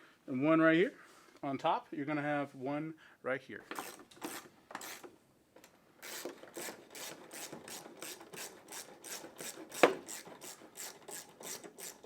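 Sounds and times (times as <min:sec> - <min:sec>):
ratchet wrench rasping: 0:03.7 - 0:05.1, 0:06.0 - 0:12.0.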